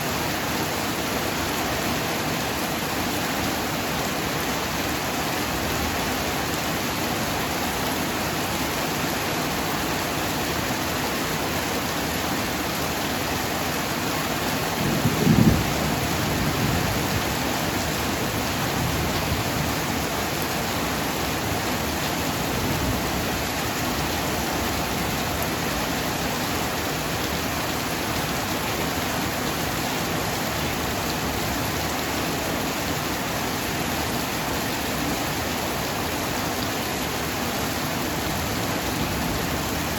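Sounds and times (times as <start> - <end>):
heavy rain falling: 0.0 - 39.9
thunder clap and rumble: 14.8 - 17.3.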